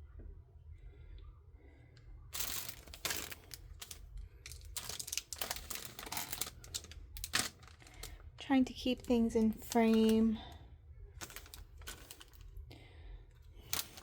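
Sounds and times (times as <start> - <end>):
plastic packaging crinkling: 2.3 - 10.5, 11.2 - 12.6, 13.6 - 14.0.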